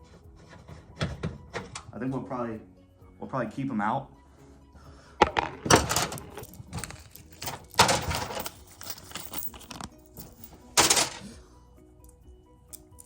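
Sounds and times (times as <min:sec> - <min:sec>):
metal parts clinking and rattling: 0:05.2 - 0:11.3.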